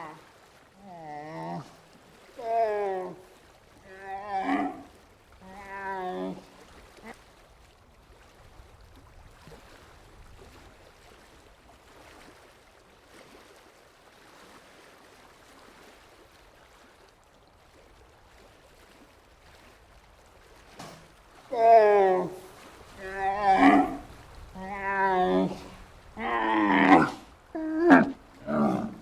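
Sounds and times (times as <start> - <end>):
wavering animal call: 0.0 - 0.2, 0.8 - 1.7, 2.4 - 3.3, 3.9 - 6.4, 21.5 - 29.0.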